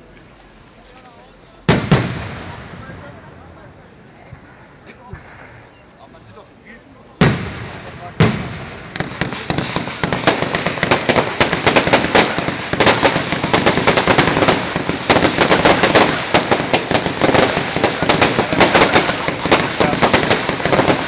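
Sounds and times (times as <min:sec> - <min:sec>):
fireworks crackling: 0:00.0 - 0:21.0
firework bang: 0:01.7 - 0:03.3, 0:07.2 - 0:21.0.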